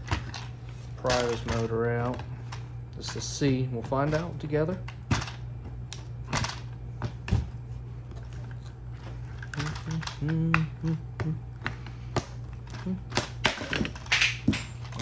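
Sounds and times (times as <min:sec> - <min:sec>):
person humming: 0:09.5 - 0:11.7, 0:12.7 - 0:13.3.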